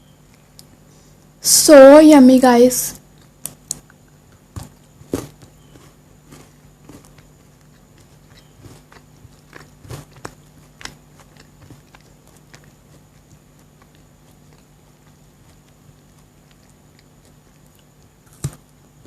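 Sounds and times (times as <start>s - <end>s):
chewing and crunching chocolate: 3.0s - 19.0s.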